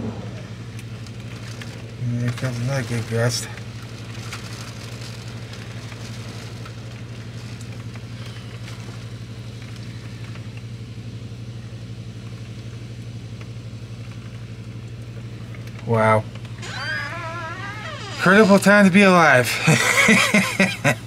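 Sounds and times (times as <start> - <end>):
storm wind: 0.0 - 0.8
rain hissing: 0.0 - 10.6
low mechanical hum: 0.0 - 21.0.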